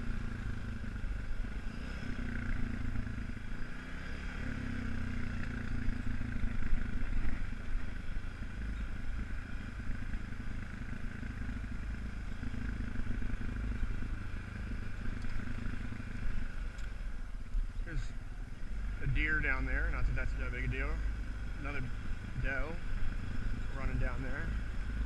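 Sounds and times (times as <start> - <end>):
atv engine running: 0.0 - 25.0.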